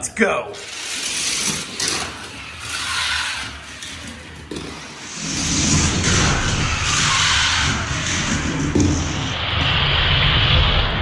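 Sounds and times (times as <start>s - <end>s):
toy cars rolling on plastic track: 0.4s - 8.4s.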